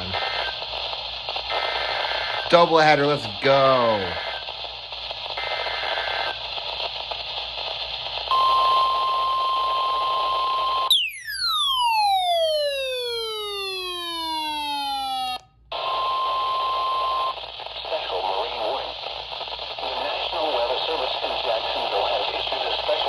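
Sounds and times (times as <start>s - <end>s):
radio static hiss: 0.0s - 9.2s, 17.2s - 23.0s
steady warning alarm tone: 8.3s - 15.4s
tones sliding down in pitch: 10.9s - 15.4s.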